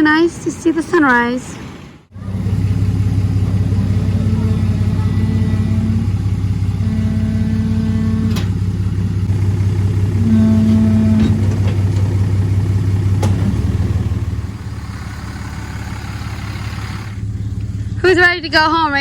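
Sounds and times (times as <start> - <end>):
vehicle engine humming: 0.0 - 19.0
brief tones: 3.5 - 12.3.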